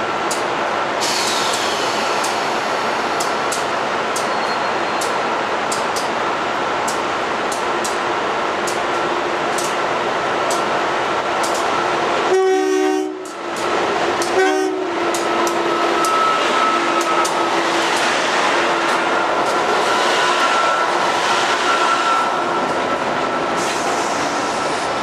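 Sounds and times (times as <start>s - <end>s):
train rushing roar: 0.0s - 25.0s
train wheels clicking: 0.2s - 6.2s, 6.8s - 9.8s, 10.4s - 10.7s, 11.4s - 11.8s, 13.2s - 25.0s
train horn blasts: 12.3s - 13.3s, 14.2s - 15.1s.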